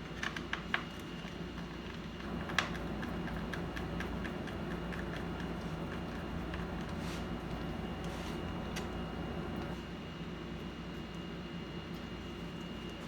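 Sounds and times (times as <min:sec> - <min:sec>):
steady hum: 0:02.2 - 0:09.8.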